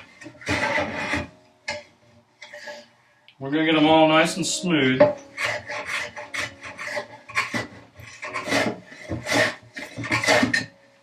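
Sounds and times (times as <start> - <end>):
hand plane shaving wood: 0.0 - 1.4, 5.2 - 10.8.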